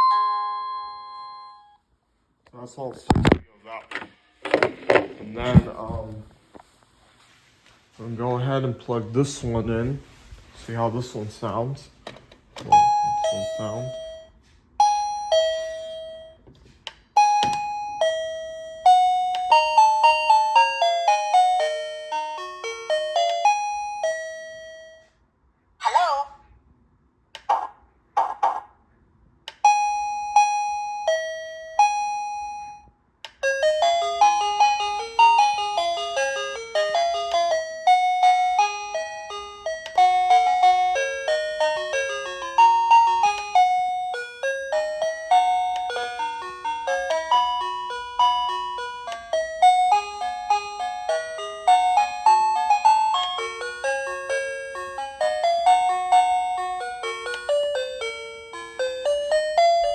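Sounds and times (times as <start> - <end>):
doorbell chime bell notes: 0.0 - 1.8, 12.7 - 16.4, 17.2 - 25.2, 29.6 - 59.9
electronic doorbell melody: 0.0 - 1.8, 12.7 - 16.5, 17.1 - 25.3, 29.6 - 59.9.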